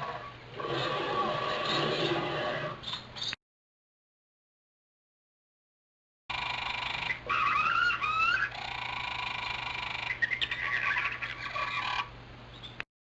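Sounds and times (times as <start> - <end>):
creature chirping and squawking calls: 6.3 - 12.8.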